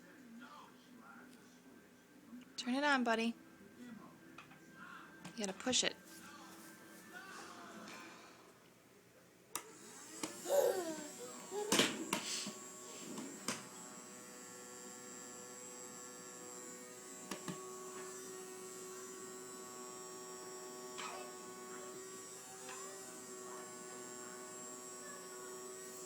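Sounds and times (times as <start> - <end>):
vacuum cleaner humming: 9.6 - 26.0.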